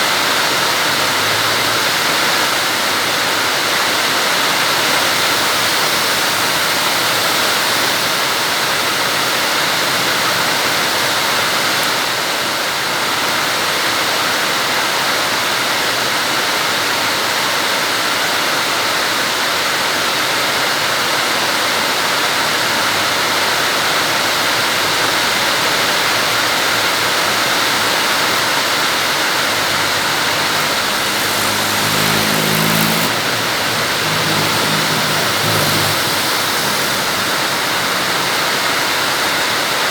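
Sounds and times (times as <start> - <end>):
heavy rain hissing: 22.4 - 39.9
vehicle engine passing: 22.7 - 39.9.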